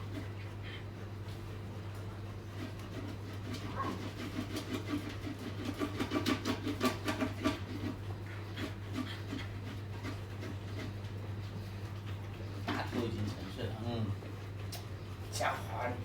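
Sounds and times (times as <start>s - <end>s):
dog panting: 2.9s - 13.1s.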